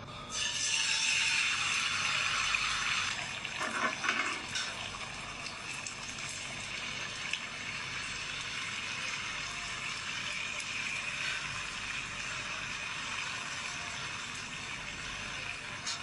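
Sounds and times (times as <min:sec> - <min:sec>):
water running from tap: 0:00.3 - 0:16.0
dishes clinking: 0:03.6 - 0:04.8.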